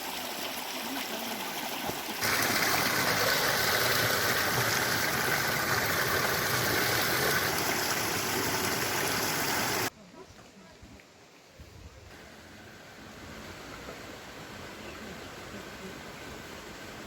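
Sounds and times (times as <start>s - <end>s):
stream rushing over rocks: 0.0s - 9.9s.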